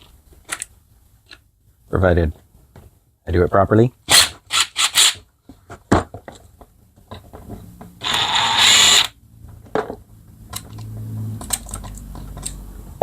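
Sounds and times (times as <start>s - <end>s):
power impact tool rattling: 8.0s - 9.1s
metal parts clicking: 10.5s - 12.6s.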